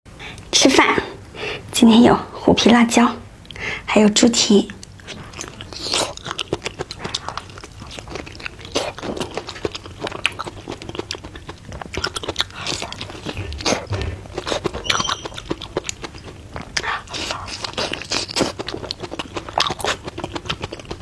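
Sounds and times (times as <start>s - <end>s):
wet mouth clicks and crunches: 4.7s - 21.0s
person biting and chewing food: 4.8s - 21.0s.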